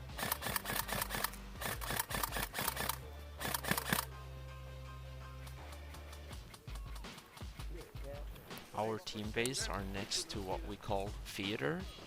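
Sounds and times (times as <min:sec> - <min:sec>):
fast clicky percussion beat: 0:00.1 - 0:04.1, 0:05.4 - 0:11.6
steady bass notes: 0:09.2 - 0:11.4.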